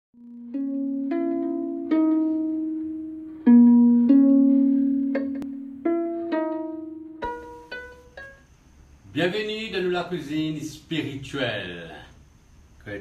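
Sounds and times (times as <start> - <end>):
plucked-string intro music: 0.2 - 8.5.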